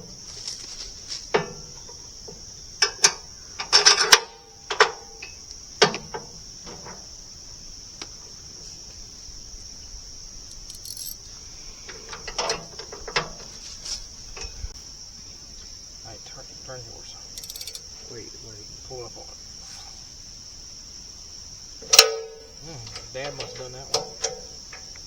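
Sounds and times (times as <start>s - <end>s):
high-pitched insect chorus: 0.0s - 25.0s
metal tools clinking: 2.8s - 5.4s, 10.5s - 11.3s, 11.9s - 14.7s, 17.3s - 17.9s, 21.8s - 24.9s.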